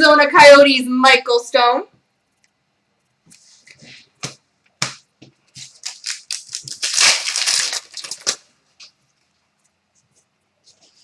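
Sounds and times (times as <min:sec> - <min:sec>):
foil wrapper crinkling: 0:05.5 - 0:09.0.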